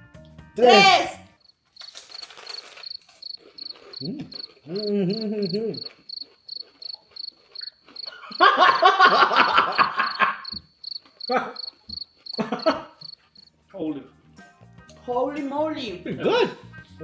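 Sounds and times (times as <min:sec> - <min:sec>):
people laughing and exclaiming: 0:00.6 - 0:01.2, 0:04.0 - 0:05.9, 0:08.1 - 0:10.6, 0:11.3 - 0:11.6, 0:12.4 - 0:13.0
cricket chirping: 0:00.7 - 0:13.6
person humming: 0:04.0 - 0:06.0.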